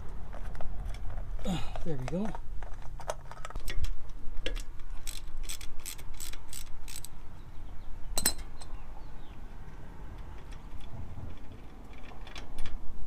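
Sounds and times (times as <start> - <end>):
ratchet wrench clicking: 5.0 - 7.2
metallic clank with ring: 8.2 - 8.7.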